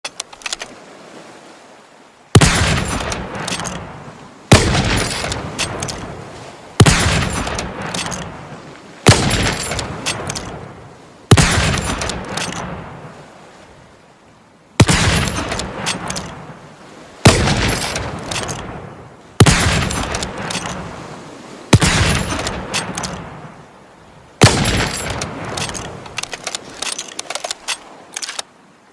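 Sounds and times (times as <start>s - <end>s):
rifle bolt clicking: 0.0s - 0.8s, 2.8s - 3.8s, 7.3s - 8.3s, 9.1s - 10.5s, 11.4s - 12.6s, 14.8s - 16.4s, 17.7s - 18.6s, 22.1s - 23.2s, 24.4s - 28.5s
rifle shots echoing: 2.4s - 3.9s, 4.5s - 6.1s, 6.8s - 8.4s, 9.0s - 10.6s, 11.3s - 13.0s, 14.8s - 16.5s, 17.2s - 18.8s, 19.4s - 20.9s, 21.7s - 23.4s, 24.4s - 27.7s.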